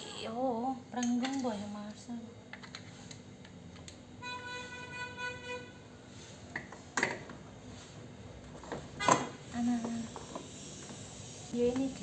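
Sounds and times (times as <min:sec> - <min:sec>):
vehicle horn: 0:04.2 - 0:06.0.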